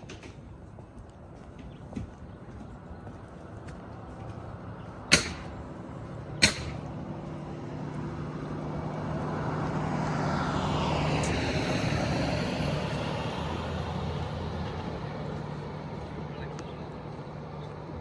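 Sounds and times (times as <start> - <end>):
vehicle passing: 2.6 - 18.0
sharp knocks: 5.1 - 5.6, 6.4 - 6.9.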